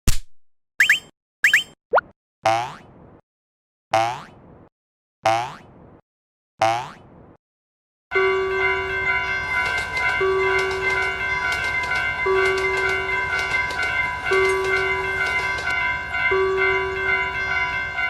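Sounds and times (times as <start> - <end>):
railway crossing warning bell: 8.1 - 18.0.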